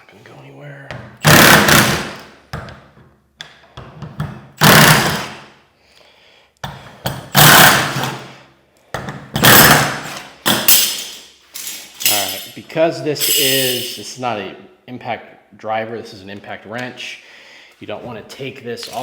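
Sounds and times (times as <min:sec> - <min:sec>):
impact wrench hammering bolts: 0:01.1 - 0:02.8, 0:03.6 - 0:05.4, 0:06.6 - 0:08.4, 0:09.0 - 0:12.6.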